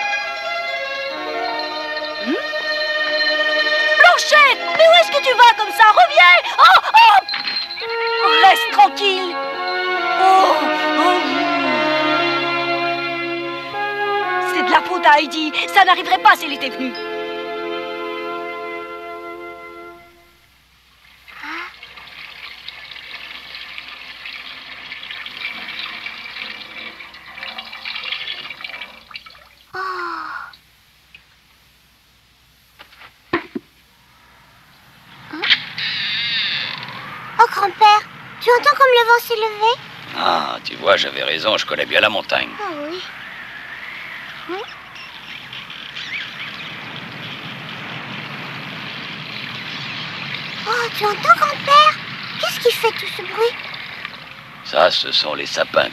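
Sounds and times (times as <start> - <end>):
rushing water: 0.0 - 31.4, 35.1 - 55.9
short falling cry: 21.3 - 21.8, 29.7 - 30.6
wind rushing through trees: 33.8 - 55.9
faint high glides: 33.9 - 55.9.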